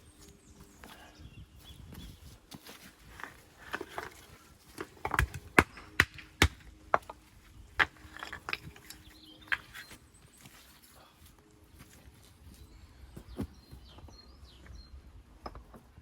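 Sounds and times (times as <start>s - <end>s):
stones knocking together: 3.1s - 7.2s, 7.8s - 9.9s.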